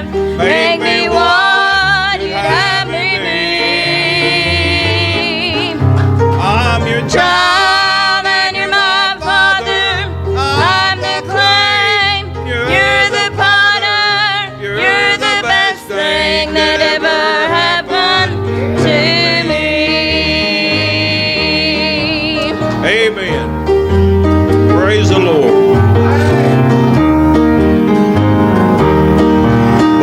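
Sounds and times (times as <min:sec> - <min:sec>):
instrumental accompaniment: 0:00.0 - 0:30.0
person singing with vibrato: 0:24.7 - 0:26.4.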